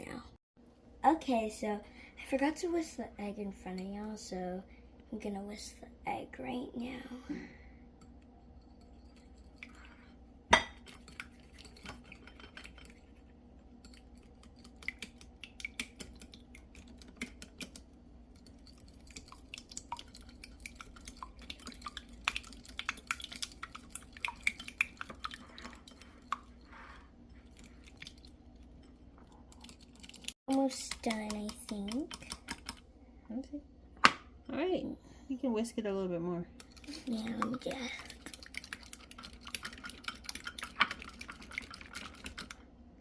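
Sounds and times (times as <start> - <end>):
whisk clicking against bowl: 10.8 - 26.6, 29.6 - 32.8.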